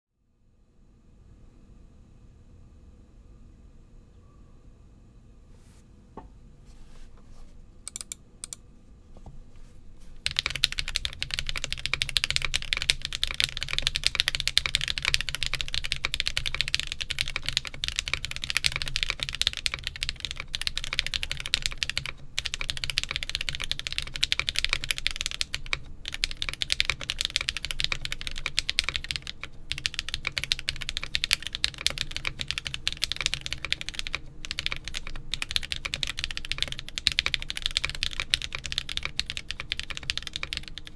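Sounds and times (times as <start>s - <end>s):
mechanical keyboard typing: 7.9s - 8.6s, 10.2s - 40.9s.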